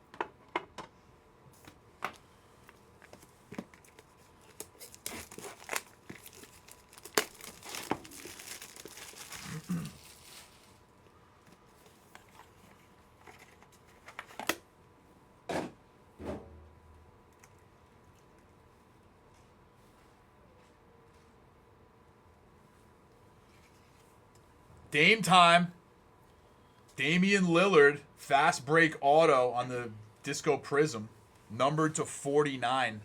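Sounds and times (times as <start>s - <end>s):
plastic packaging crinkling and tearing: 3.0s - 10.8s.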